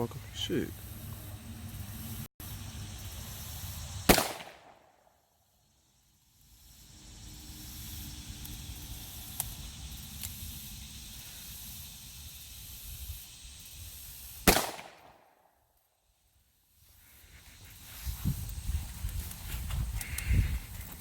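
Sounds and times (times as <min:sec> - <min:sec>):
outdoor background noise: 0:00.0 - 0:21.0
loud gunshot: 0:04.1 - 0:04.9, 0:14.4 - 0:15.4.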